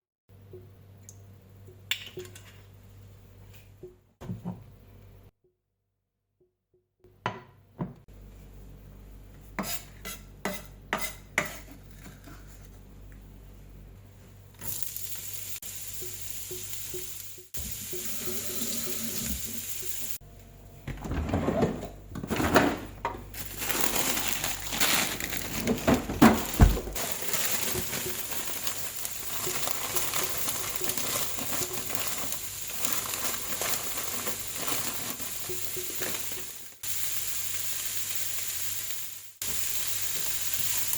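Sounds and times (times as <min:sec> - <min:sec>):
food sizzling in frying pan: 0:14.6 - 0:20.2, 0:26.4 - 0:40.9
scraping and tossing food: 0:23.4 - 0:36.6.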